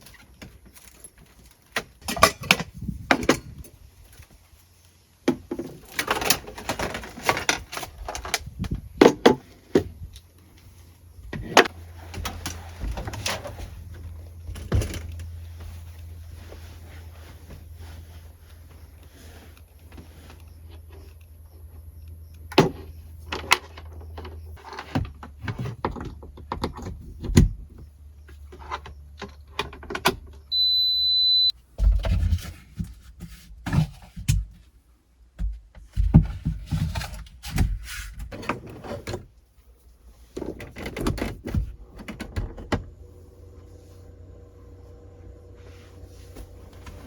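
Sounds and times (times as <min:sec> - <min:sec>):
high electronic beep: 0:30.5 - 0:31.5
low steady hum: 0:41.2 - 0:47.0.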